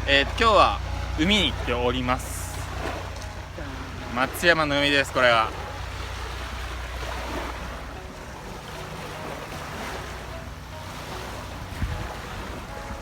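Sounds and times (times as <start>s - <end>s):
waves washing on shore: 0.0s - 13.0s
wind rumbling on microphone: 5.5s - 13.0s.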